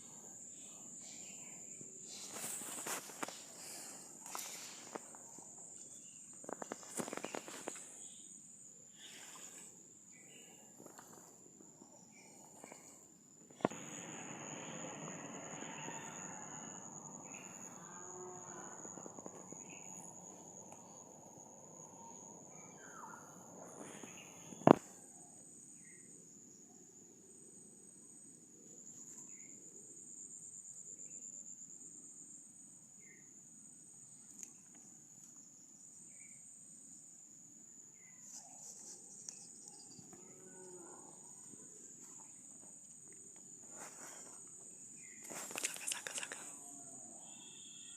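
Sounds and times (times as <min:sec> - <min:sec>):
insects chirring: 0:00.0 - 0:47.9
rustling: 0:02.1 - 0:08.0.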